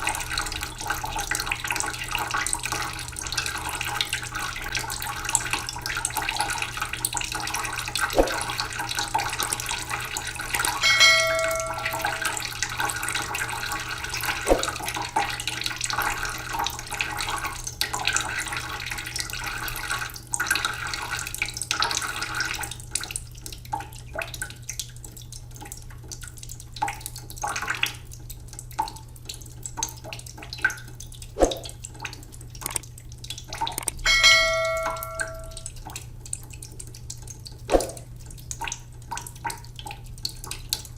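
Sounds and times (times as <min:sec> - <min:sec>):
water drips: 0:00.0 - 0:40.9
waterfall pouring and splashing: 0:07.9 - 0:12.8, 0:33.7 - 0:35.6
short ringing tone: 0:10.8 - 0:12.4, 0:34.1 - 0:35.6.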